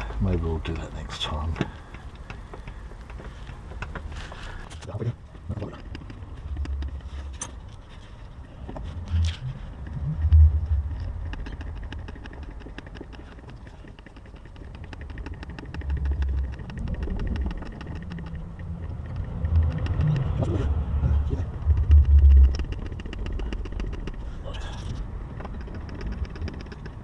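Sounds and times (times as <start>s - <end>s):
hand oil pump working: 5.7s - 20.6s, 21.6s - 27.0s
low rumbling thumps: 8.6s - 12.8s, 14.8s - 27.0s.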